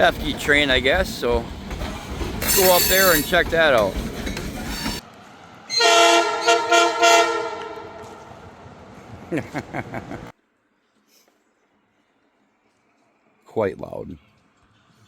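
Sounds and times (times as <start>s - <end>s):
train air horn blasts: 5.7s - 8.4s.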